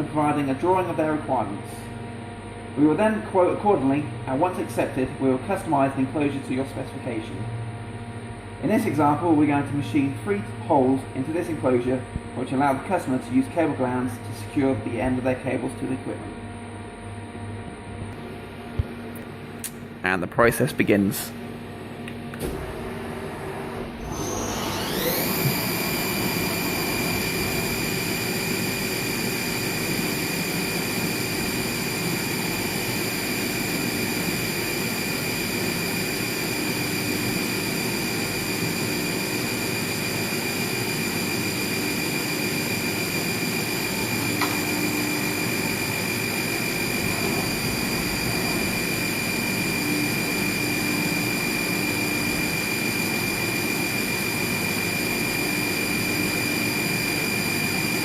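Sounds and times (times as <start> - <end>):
milling machine spindle whining: 22.5 - 58.0.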